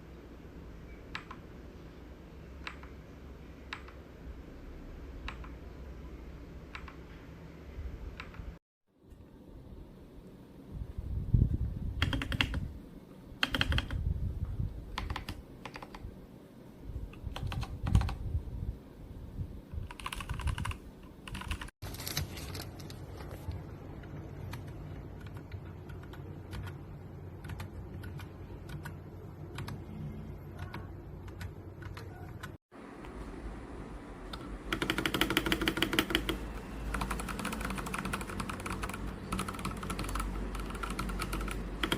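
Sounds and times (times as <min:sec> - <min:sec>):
mechanical keyboard keys clacking: 0:12.0 - 0:12.6, 0:13.4 - 0:14.0, 0:14.9 - 0:16.0, 0:17.2 - 0:18.2, 0:19.8 - 0:21.7, 0:34.3 - 0:41.9.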